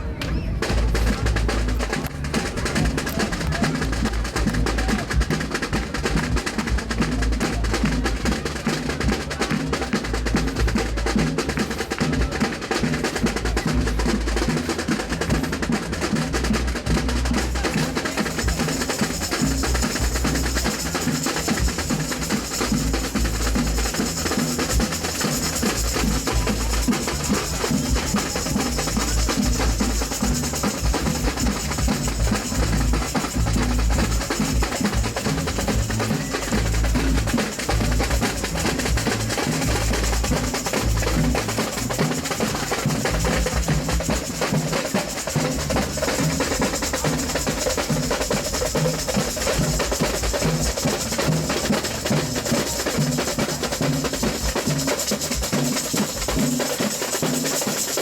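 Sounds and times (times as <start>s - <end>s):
samba percussion band: 0.0s - 58.0s
bright hissing high percussion: 14.9s - 58.0s.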